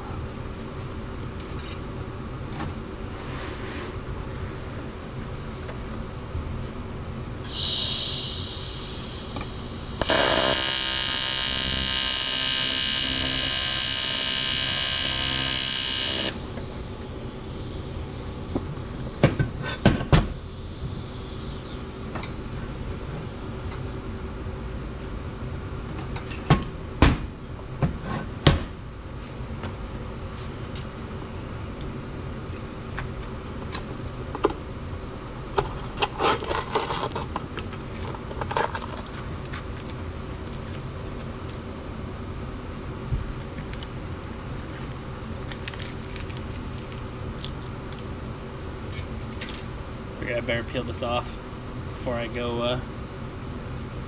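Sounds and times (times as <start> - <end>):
welding arc buzzing: 7.4 - 23.9
short high-pitched sound: 7.5 - 19.8.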